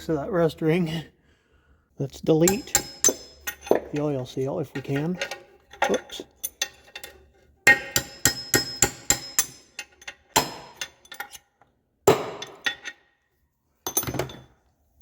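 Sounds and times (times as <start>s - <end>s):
metal tool striking metal: 2.4s - 11.4s, 12.1s - 13.0s.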